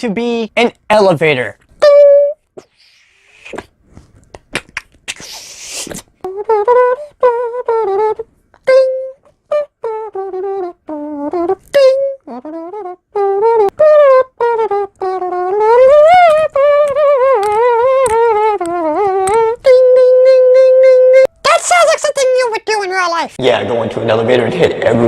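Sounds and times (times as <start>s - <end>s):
man making mouth clicks: 4.3s - 6.1s
man humming a tune: 6.3s - 21.4s.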